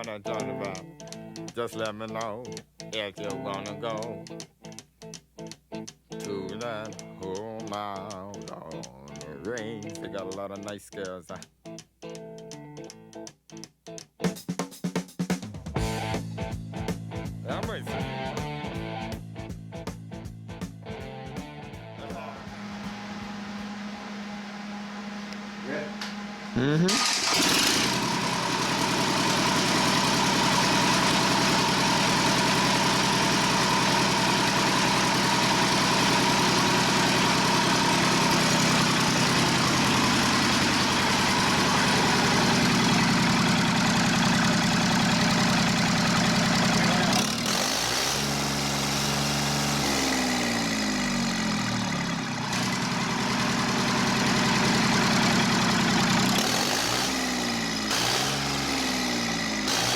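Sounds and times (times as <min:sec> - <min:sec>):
diesel engine idling: 0:26.2 - 0:59.9.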